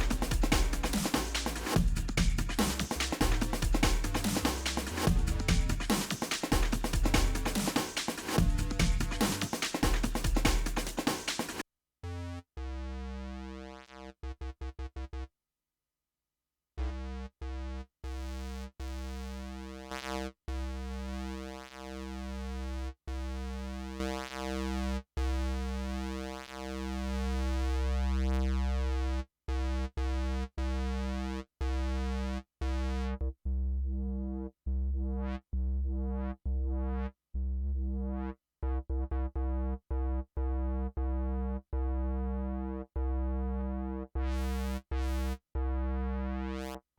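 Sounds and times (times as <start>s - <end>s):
synth chord stabs: 0.0s - 7.8s.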